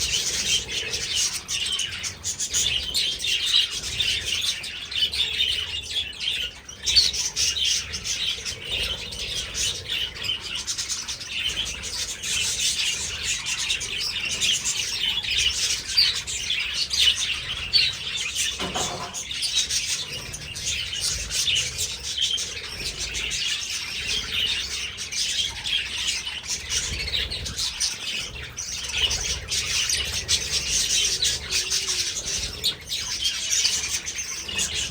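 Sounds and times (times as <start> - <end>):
budgerigars chattering and chirping: 0.0 - 34.9
lower-pitched bird call: 29.8 - 34.1.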